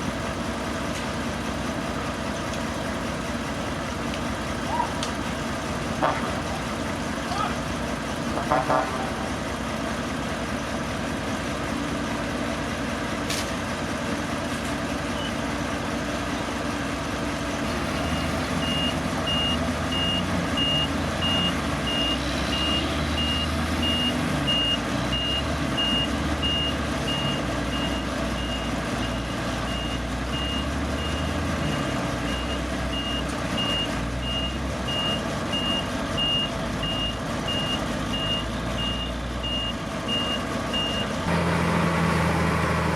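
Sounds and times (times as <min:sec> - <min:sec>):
diesel machinery running: 0:00.0 - 0:42.9
reversing alarm beeping: 0:17.9 - 0:41.1.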